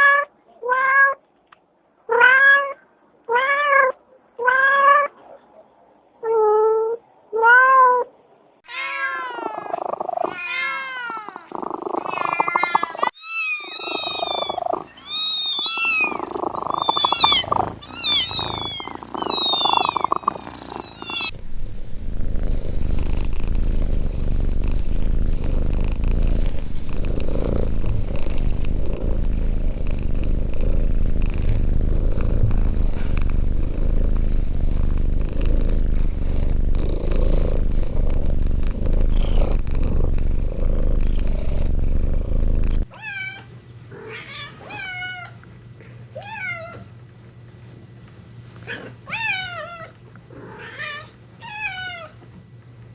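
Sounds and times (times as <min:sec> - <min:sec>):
kittens mewing: 0:08.7 - 0:21.4, 0:42.6 - 0:45.4, 0:48.7 - 0:52.2
cat purring: 0:09.4 - 0:10.4, 0:11.1 - 0:13.2, 0:13.8 - 0:42.9.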